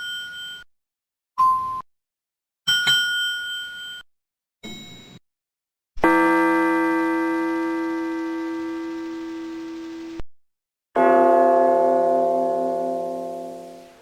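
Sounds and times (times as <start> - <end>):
high bright bell ding: 2.7 - 4.0
deep bell ringing: 11.0 - 13.9.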